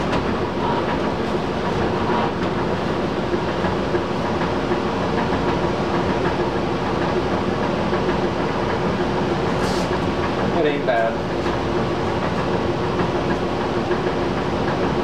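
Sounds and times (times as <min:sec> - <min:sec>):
blower humming: 0:00.0 - 0:15.0.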